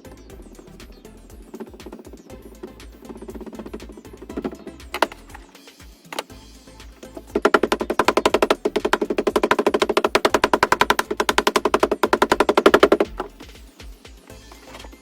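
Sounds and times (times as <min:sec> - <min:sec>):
background music: 0:00.0 - 0:15.0
rapid mechanical rattle: 0:07.2 - 0:13.6.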